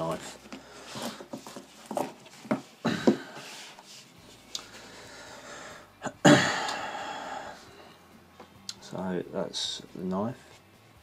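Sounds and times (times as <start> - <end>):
soft rustling: 0.0 - 4.9.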